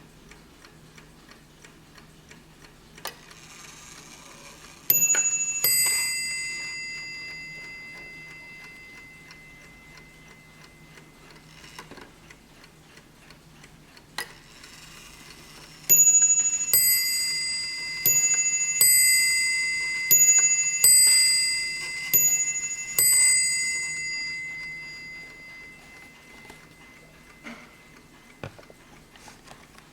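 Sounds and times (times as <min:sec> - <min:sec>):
clock striking two bells: 0:04.9 - 0:11.2, 0:15.9 - 0:28.9
clock ticking: 0:04.9 - 0:29.9.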